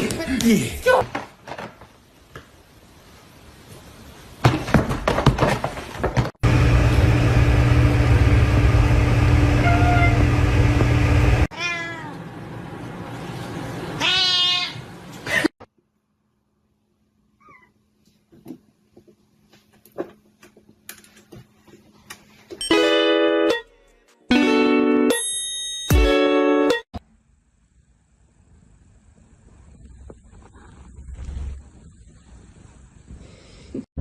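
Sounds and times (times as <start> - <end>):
loud steady noise with hum: 6.4 - 11.5
cat meowing: 11.5 - 12.2, 14.0 - 14.8.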